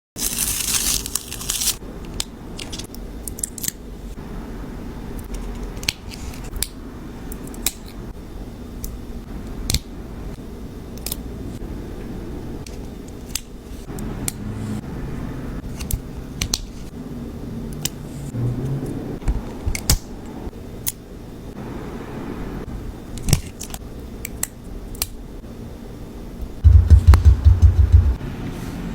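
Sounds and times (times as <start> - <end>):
steady low hum: 1.8 - 28.9.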